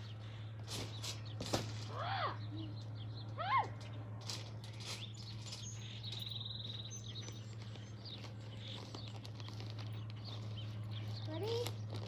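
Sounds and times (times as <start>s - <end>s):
small birds chirping: 0.0s - 12.0s
steady low hum: 0.0s - 12.0s
bird trill: 4.7s - 11.7s.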